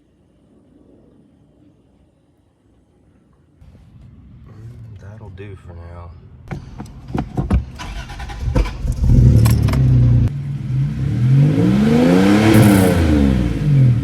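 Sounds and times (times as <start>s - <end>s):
car engine starting and revving: 6.4s - 14.0s
key and ignition clicks: 7.8s - 10.0s.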